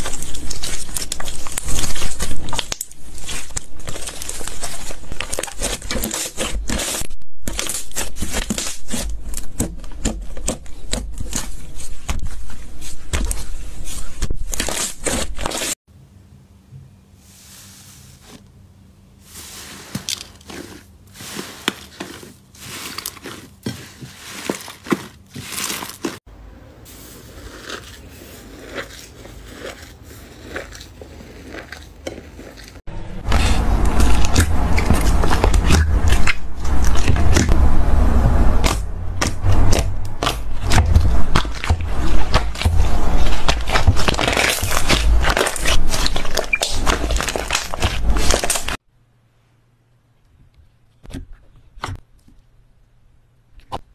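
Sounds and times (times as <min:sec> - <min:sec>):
slime crackling and popping: 0:00.0 - 0:09.4, 0:38.6 - 0:48.8.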